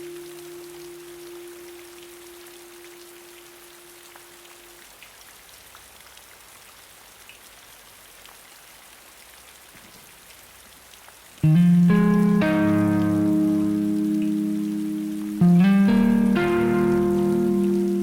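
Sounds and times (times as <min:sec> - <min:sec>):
raindrops ticking: 0:00.0 - 0:05.2, 0:10.9 - 0:18.0
steady rain: 0:00.0 - 0:18.0
guitar note ringing: 0:11.4 - 0:18.0.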